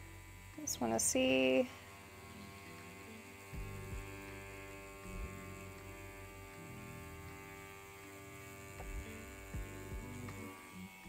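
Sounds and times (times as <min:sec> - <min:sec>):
tattoo pen motor hum: 0:00.0 - 0:11.0
soft low thuds: 0:03.6 - 0:04.2, 0:08.8 - 0:10.4.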